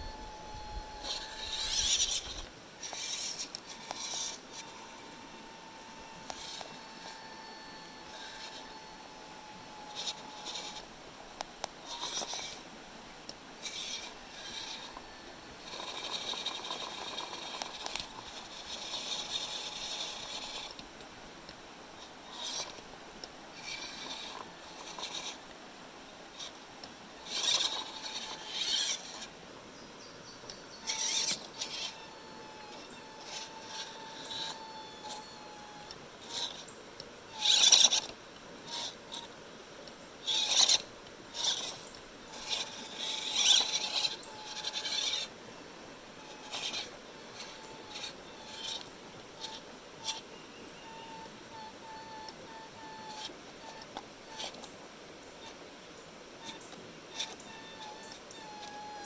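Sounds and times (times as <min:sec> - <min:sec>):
toy car motor whirring: 0:00.0 - 0:20.9, 0:22.0 - 0:25.5, 0:26.3 - 0:26.6, 0:27.2 - 0:29.4, 0:30.8 - 0:39.4, 0:40.2 - 0:54.8, 0:55.4 - 0:55.7, 0:56.4 - 0:59.0
faint motor whine: 0:00.0 - 0:59.0.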